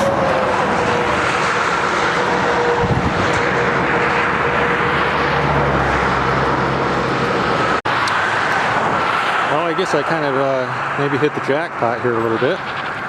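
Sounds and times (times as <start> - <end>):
low hum: 0.0 - 9.4
faint drone: 0.0 - 13.0
heavy vehicle engine and road noise: 0.0 - 13.0.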